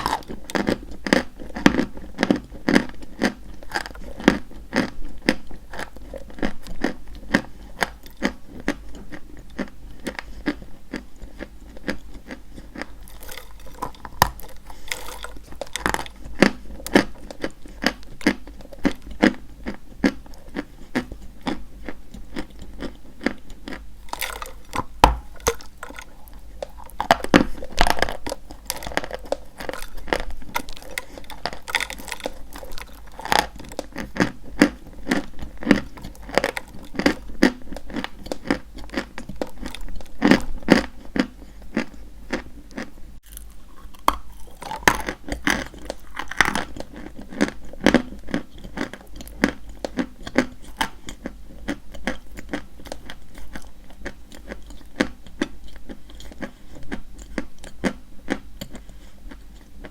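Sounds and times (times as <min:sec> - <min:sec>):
chalk being chewed: 0:00.0 - 0:59.9.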